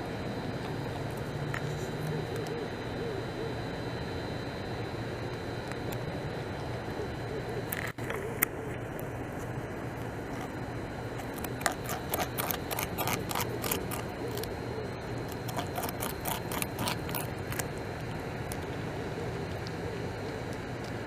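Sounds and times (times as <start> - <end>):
low background hum: 0.0 - 21.0
beaver gnawing bark: 7.7 - 21.0.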